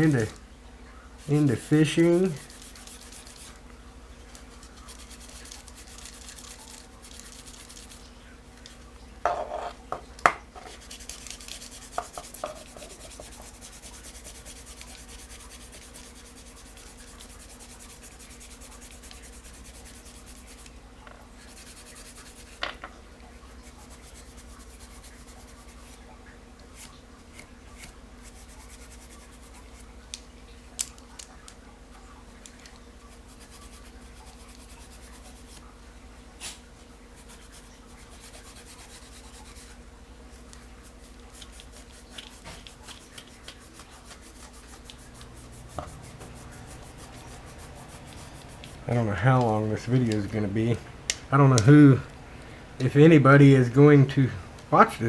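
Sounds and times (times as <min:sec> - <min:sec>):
scuffing pad scrubbing wood: 0:43.5 - 0:50.6.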